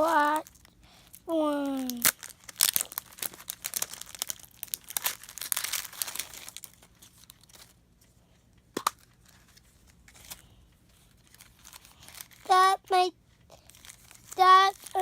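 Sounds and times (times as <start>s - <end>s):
plastic wrapping tearing and crumpling: 0.0s - 7.8s, 11.0s - 12.6s, 13.5s - 15.0s.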